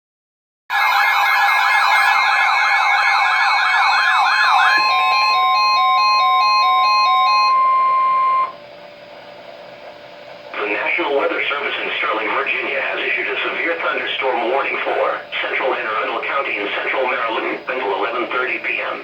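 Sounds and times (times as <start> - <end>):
steady high tone: 0.7 - 8.6
warbling siren-like tone: 0.7 - 8.6
stepping beeps: 4.4 - 8.6.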